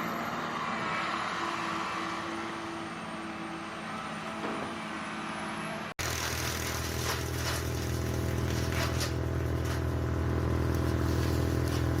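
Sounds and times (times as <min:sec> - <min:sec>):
diesel engine running: 0:03.1 - 0:12.0
short crackling noises: 0:06.0 - 0:12.0.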